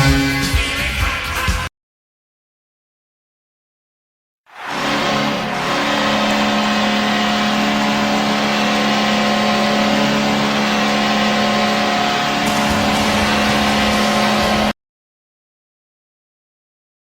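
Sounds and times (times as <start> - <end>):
crowd cheering: 4.5 - 14.7
goal horn blaring: 4.6 - 14.7.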